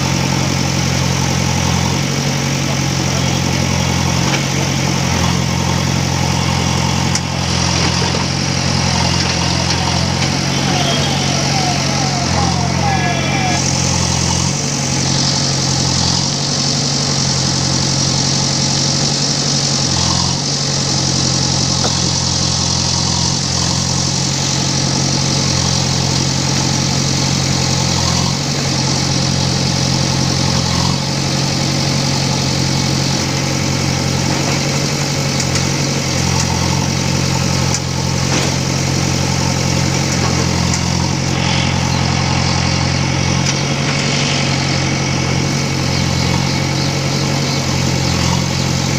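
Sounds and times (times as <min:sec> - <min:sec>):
diesel engine running: 0:00.0 - 0:48.9.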